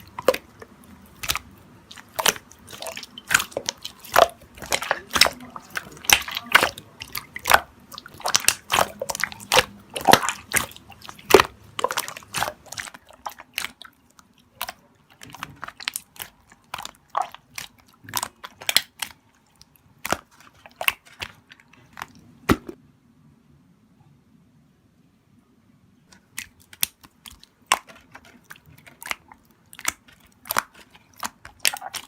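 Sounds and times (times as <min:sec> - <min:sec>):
slime clicking and popping: 0:00.0 - 0:13.8, 0:14.5 - 0:19.2, 0:26.2 - 0:32.0.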